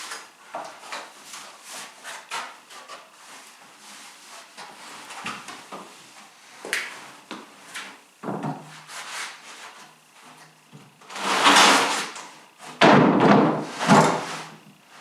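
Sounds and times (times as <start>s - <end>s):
plywood sheets clattering: 11.1s - 14.6s
plywood sheets knocking: 12.8s - 14.4s.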